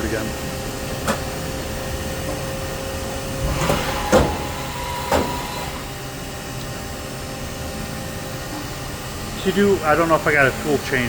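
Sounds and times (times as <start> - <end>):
lathe machine hum: 0.0 - 11.0
thin machine whine: 1.8 - 8.3.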